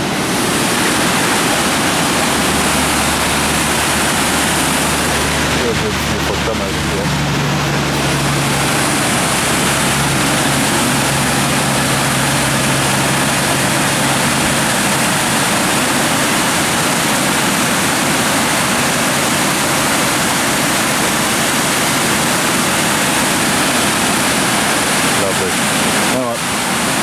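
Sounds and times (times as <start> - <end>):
low hum: 0.0 - 16.3
waterfall rushing: 0.0 - 27.0.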